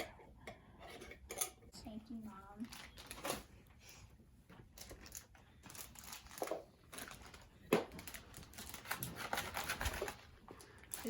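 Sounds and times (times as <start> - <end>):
packaging crinkling and rustling: 2.6 - 3.5, 4.7 - 11.0.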